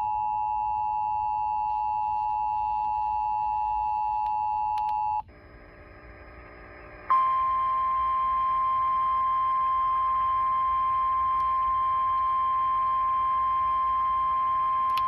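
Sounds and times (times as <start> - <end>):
steady high-pitched warning tone: 0.0 - 15.0.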